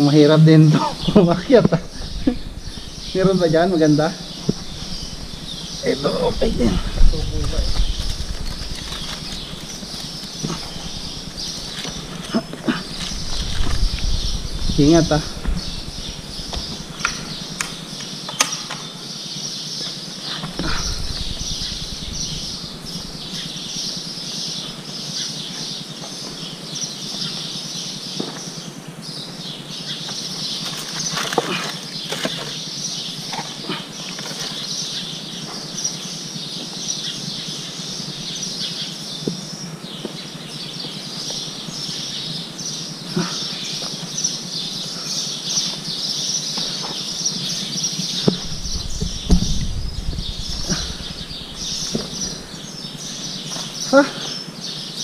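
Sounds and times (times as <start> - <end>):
footsteps on rock: 4.3 - 17.8.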